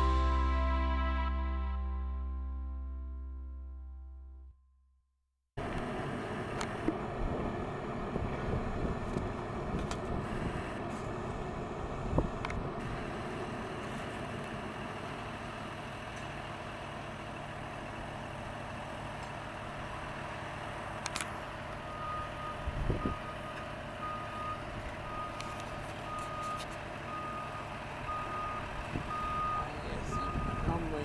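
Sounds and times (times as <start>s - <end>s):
machinery engine running: 5.6s - 31.0s
reversing alarm beeping: 21.8s - 31.0s.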